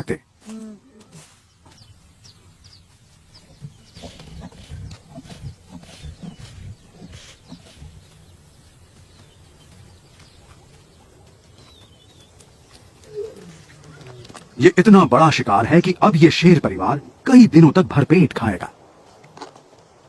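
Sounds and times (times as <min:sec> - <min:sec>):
faint bird chirps: 0:00.5 - 0:14.8
lions grunting and growling: 0:03.3 - 0:08.6, 0:13.0 - 0:14.8.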